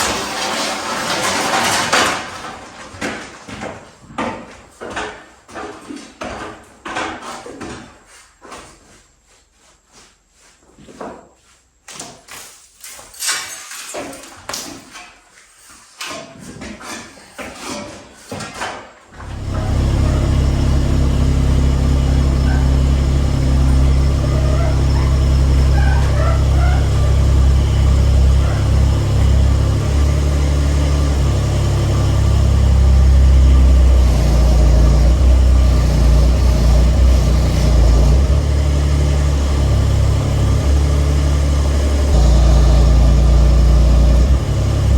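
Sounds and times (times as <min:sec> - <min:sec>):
knocks and clatter: 0:00.0 - 0:08.0
loud engine running: 0:19.2 - 0:44.9.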